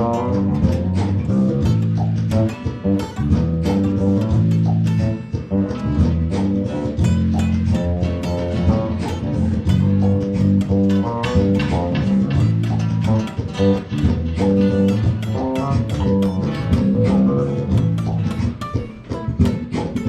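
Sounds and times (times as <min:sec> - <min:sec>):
bass guitar: 0:00.0 - 0:20.0
guitar plucked notes: 0:00.0 - 0:20.0.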